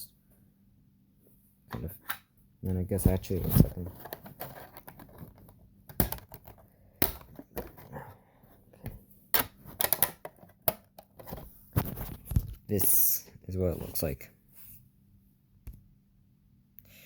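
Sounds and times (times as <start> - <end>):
clicks and knocks of hard objects: 3.6 - 8.0.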